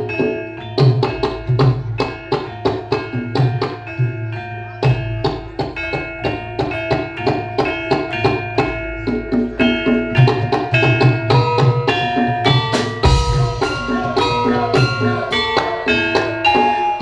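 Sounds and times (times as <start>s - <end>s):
gong-chime instruments ringing: 0.0s - 17.0s
hand drum thumping: 4.8s - 17.0s.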